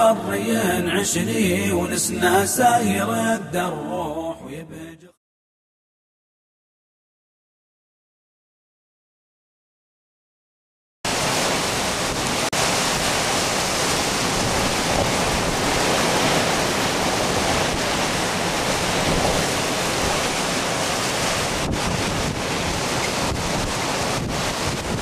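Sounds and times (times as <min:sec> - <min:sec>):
storm wind on microphone: 0:11.1 - 0:25.0.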